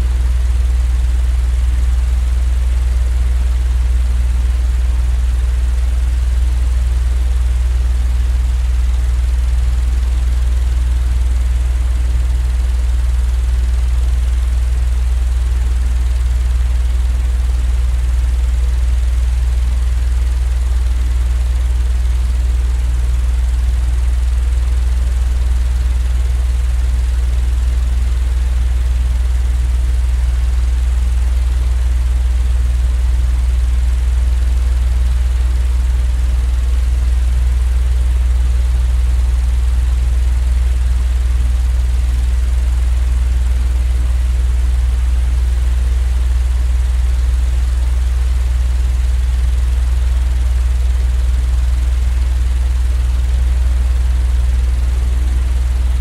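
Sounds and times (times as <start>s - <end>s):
low machine drone: 24.4s - 25.8s, 55.0s - 56.0s.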